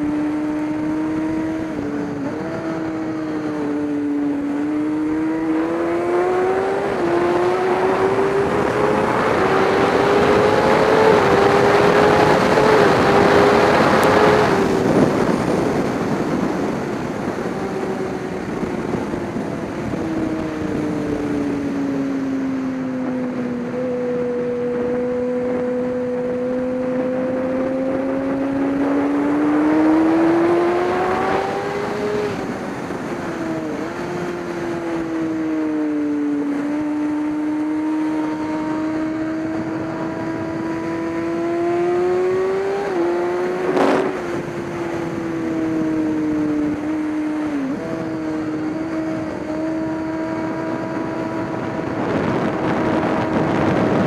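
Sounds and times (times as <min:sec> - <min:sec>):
race engine revving: 0:00.0 - 0:21.7, 0:24.6 - 0:54.0
wind and wet road hiss: 0:10.7 - 0:21.6.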